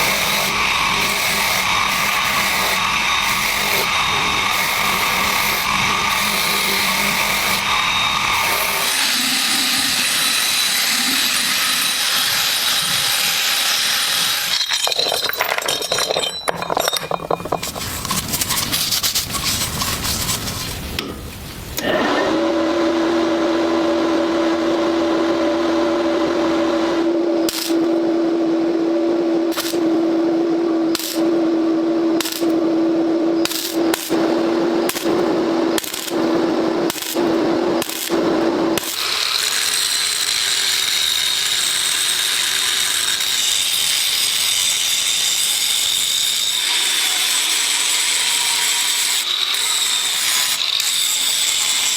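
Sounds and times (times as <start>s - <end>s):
small motor humming: 0.0s - 10.2s
power tool grinding metal: 0.0s - 14.7s, 21.8s - 51.9s
scraping and clicking: 14.5s - 21.1s.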